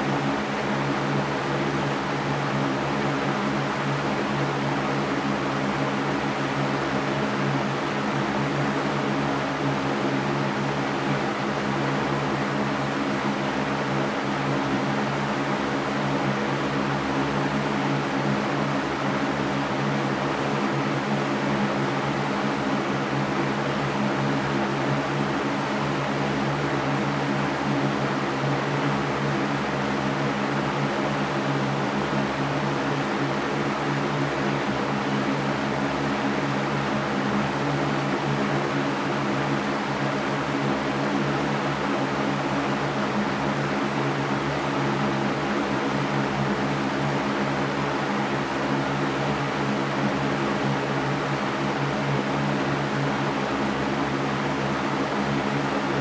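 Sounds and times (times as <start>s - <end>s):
electric fan air rush: 30.4s - 56.0s.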